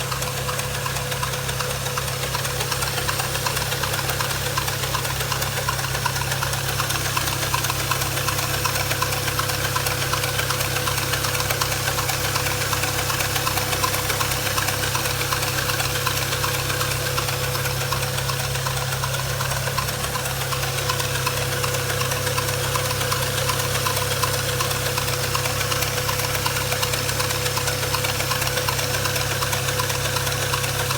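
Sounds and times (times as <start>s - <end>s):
car engine idling: 0.0s - 30.9s
fast ticking rattle: 0.0s - 30.9s.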